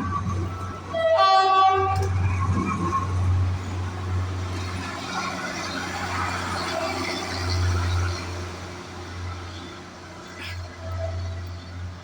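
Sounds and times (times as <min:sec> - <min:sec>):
train rumbling: 0:00.0 - 0:12.0
train horn: 0:00.9 - 0:02.2.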